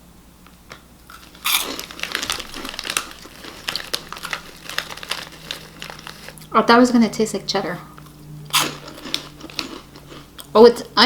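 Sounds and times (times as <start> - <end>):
crunchy snack being chewed: 0.6 - 6.5, 7.9 - 10.6.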